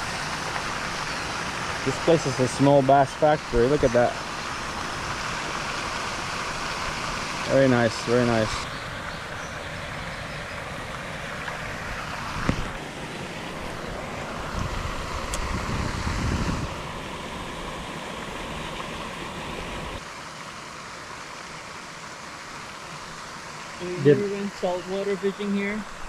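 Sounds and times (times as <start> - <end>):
steady outdoor rushing noise: 0.0 - 26.0
wind buffeting microphone: 13.6 - 16.9.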